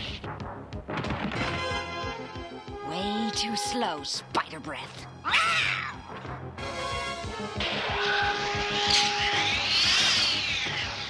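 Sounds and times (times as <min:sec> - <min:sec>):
cartoon action music: 0:05.3 - 0:11.0.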